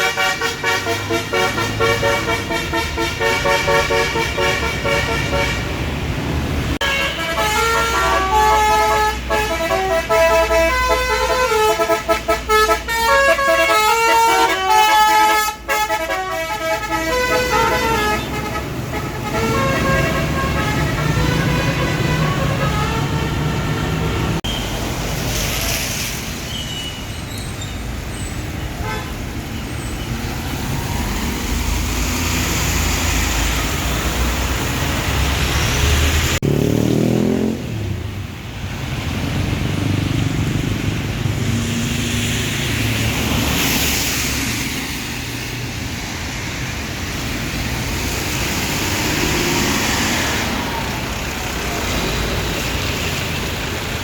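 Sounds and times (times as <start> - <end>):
car horn toots: 0.0 - 5.7, 6.8 - 24.6, 28.8 - 29.2
vehicles passing: 0.0 - 54.0.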